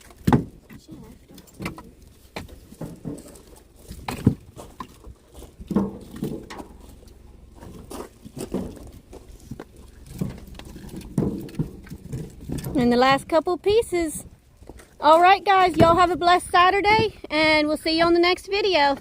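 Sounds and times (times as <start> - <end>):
firewood knocking and clattering: 0.0 - 16.3.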